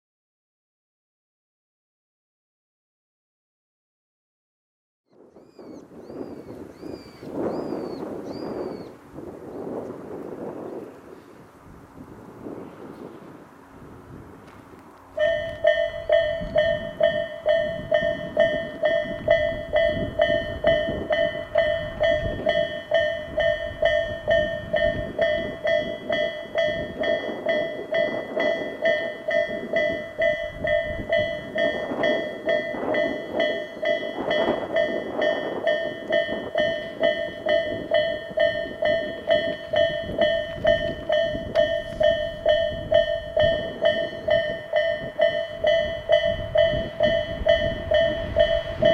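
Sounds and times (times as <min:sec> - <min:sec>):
train passing: 0:06.2 - 0:48.9
level crossing warning bell: 0:15.1 - 0:48.9.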